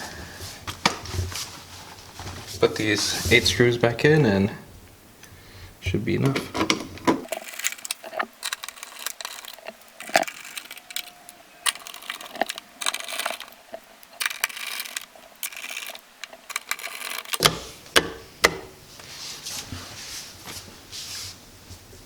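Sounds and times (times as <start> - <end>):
screws scraping as they turn: 7.2 - 17.8
screwdriver metal clicks: 7.2 - 18.6.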